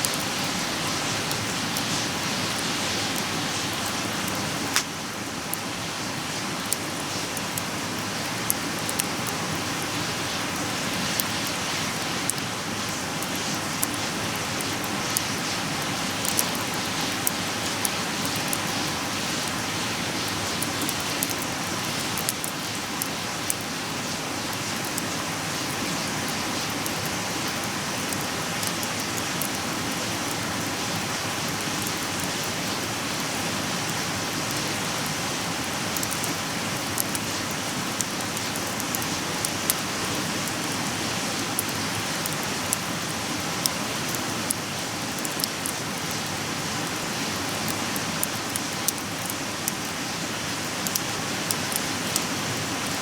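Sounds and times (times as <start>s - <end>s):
steady fire hiss: 0.0s - 53.0s
wood fire crackling: 0.0s - 53.0s
sharp fire pops: 4.7s - 5.1s.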